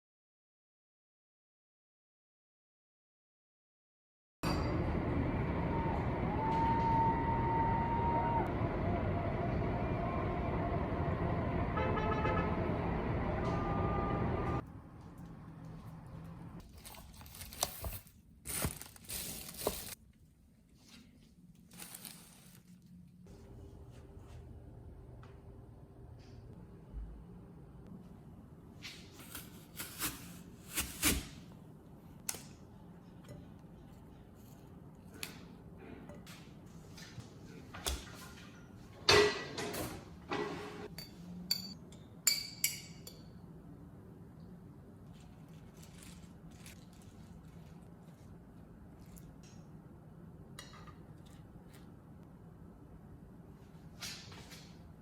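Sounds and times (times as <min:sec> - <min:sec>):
packaging crinkling and tearing: 0:16.6 - 0:20.0, 0:45.2 - 0:48.3.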